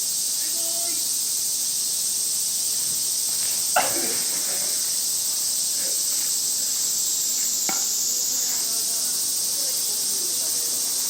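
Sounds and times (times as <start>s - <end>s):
high-pitched hiss: 0.0s - 11.0s
softball bat hitting ball: 3.7s - 4.2s, 7.6s - 8.0s.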